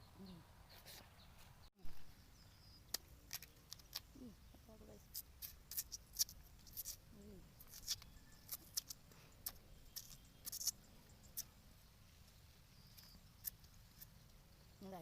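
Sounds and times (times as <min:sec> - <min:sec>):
crisp fried food being chewed: 0:02.9 - 0:04.2, 0:05.1 - 0:11.5.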